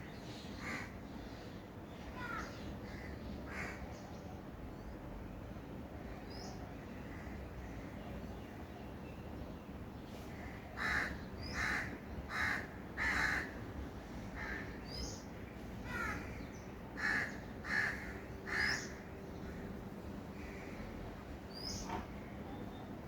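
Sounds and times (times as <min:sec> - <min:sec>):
low background noise: 0:00.0 - 0:23.0
crow cawing: 0:10.4 - 0:13.6, 0:14.4 - 0:14.8, 0:15.8 - 0:19.0.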